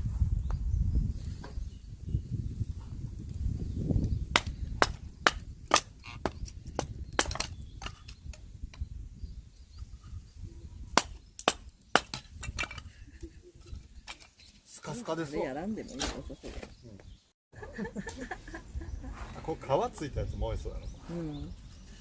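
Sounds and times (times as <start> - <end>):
firewood cracking: 4.0 - 8.4, 11.0 - 13.0.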